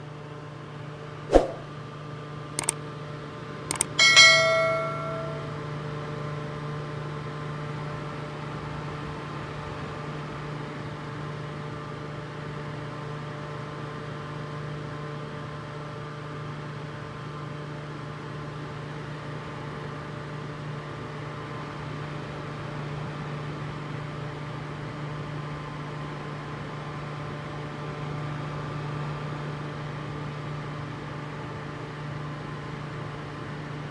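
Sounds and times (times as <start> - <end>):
sharp clicks: 3.7 - 4.0
fan humming: 3.7 - 5.6
short metallic ring: 3.7 - 5.6.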